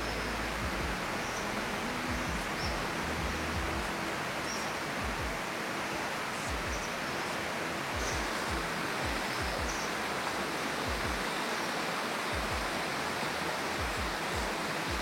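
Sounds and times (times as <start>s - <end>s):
valley stream rushing: 0.0s - 15.0s
soft low thuds: 0.6s - 1.2s, 2.0s - 4.2s, 5.0s - 5.7s, 6.5s - 7.0s, 7.9s - 9.9s, 10.8s - 11.5s, 12.3s - 12.8s, 13.8s - 15.0s.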